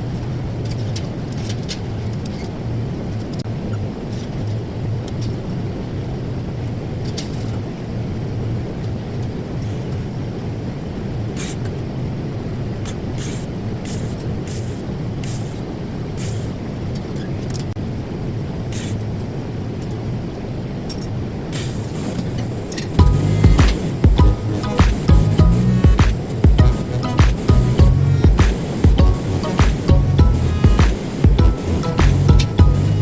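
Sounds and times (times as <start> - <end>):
welding arc buzzing hiss: 21.6 - 33.0.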